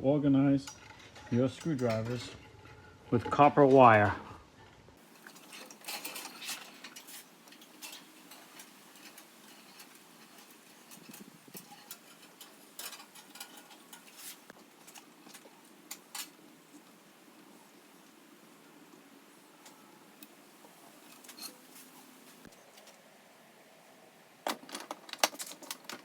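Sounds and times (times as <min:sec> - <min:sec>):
tools clicking in metal drawer: 0:24.5 - 0:26.0.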